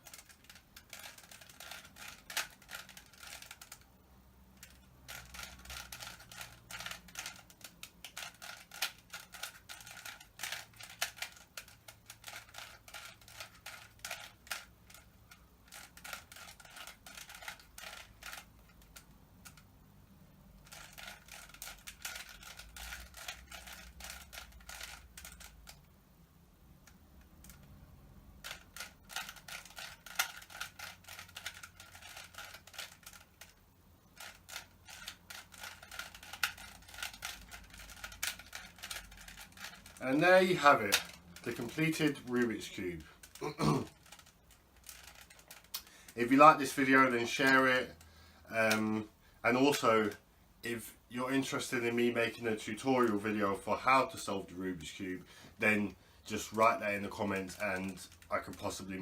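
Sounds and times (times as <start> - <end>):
plastic puzzle cube clicking: 0.0 - 19.7, 20.5 - 25.9, 28.4 - 40.0, 40.8 - 46.0.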